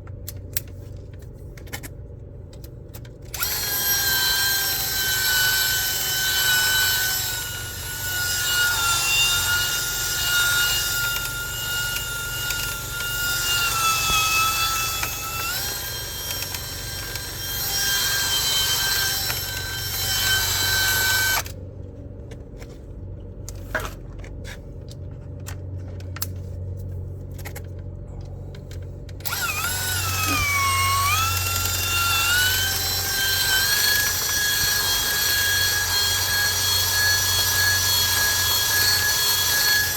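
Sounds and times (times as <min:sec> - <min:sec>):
power drill whining: 0:03.4 - 0:21.5, 0:29.2 - 0:39.9.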